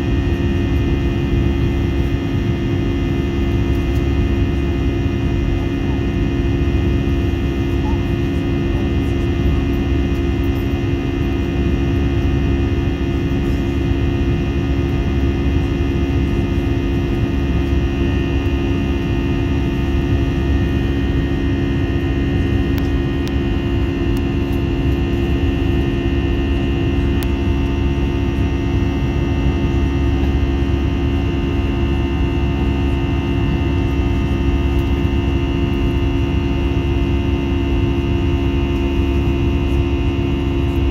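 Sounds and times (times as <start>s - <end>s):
jet engines humming: 0.0s - 40.9s.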